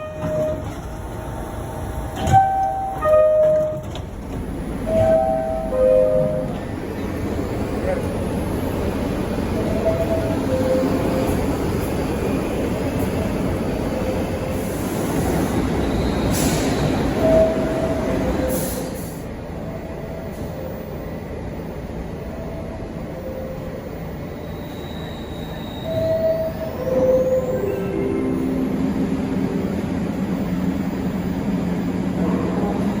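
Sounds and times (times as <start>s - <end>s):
subway train noise: 0.0s - 33.0s
two-tone door chime: 4.9s - 6.5s.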